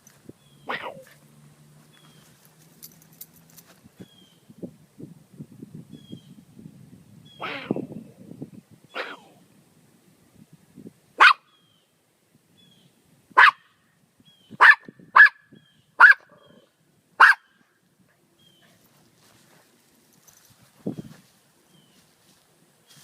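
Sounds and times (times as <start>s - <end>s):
dog barking: 0.7s - 1.1s, 9.0s - 9.3s, 11.2s - 11.5s, 13.4s - 13.7s, 14.6s - 15.4s, 16.0s - 16.6s, 17.2s - 17.5s.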